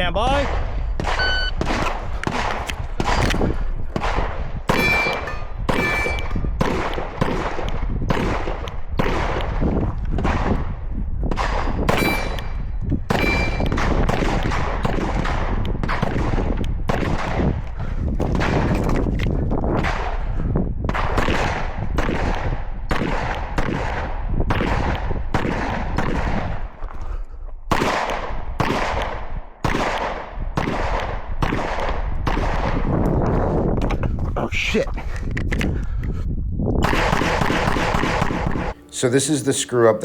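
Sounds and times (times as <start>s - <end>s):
pistol shots: 0.4s - 17.6s, 20.9s - 26.7s, 27.7s - 33.0s, 36.8s - 38.8s
shot timer beep: 1.2s - 1.6s
steel targets ringing: 4.7s - 6.4s, 11.9s - 13.7s.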